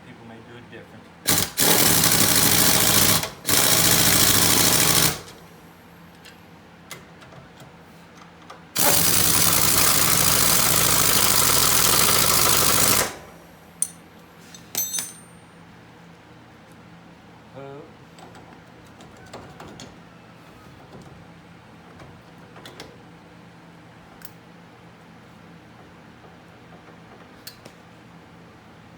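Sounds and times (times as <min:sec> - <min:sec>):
impact wrench hammering: 0:08.8 - 0:13.2, 0:14.7 - 0:15.4.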